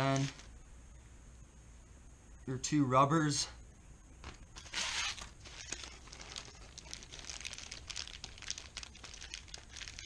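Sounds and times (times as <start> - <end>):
plastic packaging crinkling: 4.6 - 10.0.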